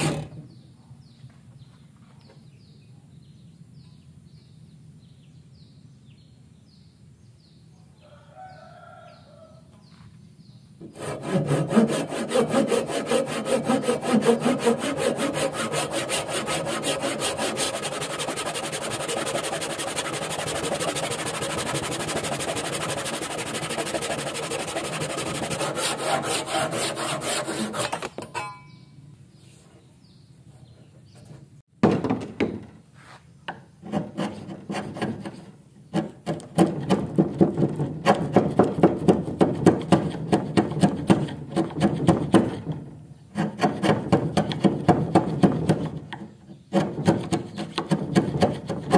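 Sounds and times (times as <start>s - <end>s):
hand saw cutting wood: 0.0s - 0.4s, 10.8s - 28.2s, 33.8s - 48.9s.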